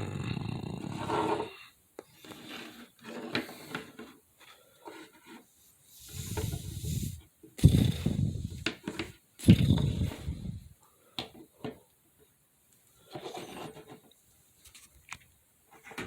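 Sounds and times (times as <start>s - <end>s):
big cats growling and hissing: 0.0s - 1.7s, 6.1s - 8.7s, 9.4s - 10.7s.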